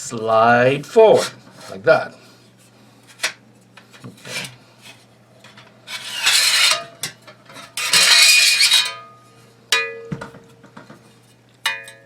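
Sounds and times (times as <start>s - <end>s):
metal rail scraping: 5.9s - 9.1s.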